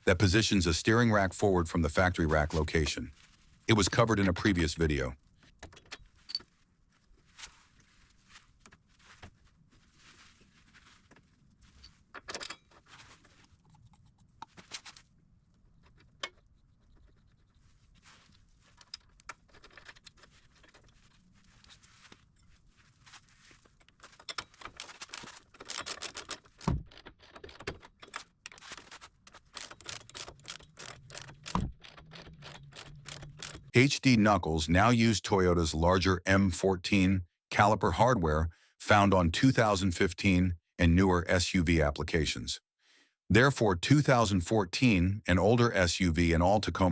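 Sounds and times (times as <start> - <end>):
metal tools clinking and rattling: 11.7 - 13.0.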